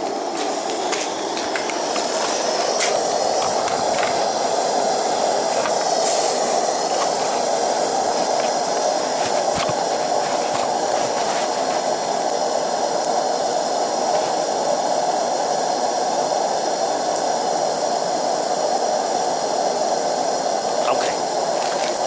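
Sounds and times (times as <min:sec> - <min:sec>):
burner flame rushing: 0:00.3 - 0:15.8.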